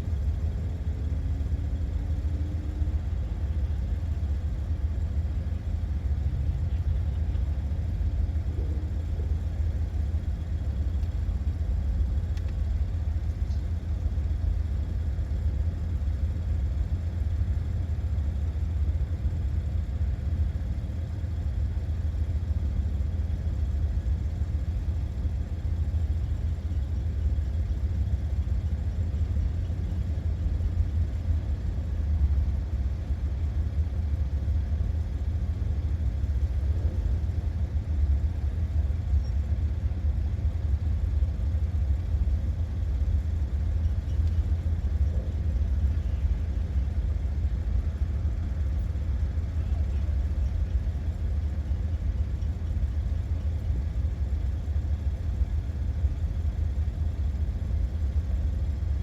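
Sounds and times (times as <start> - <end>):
car engine rumble: 0.0 - 59.0
road noise: 22.9 - 59.0.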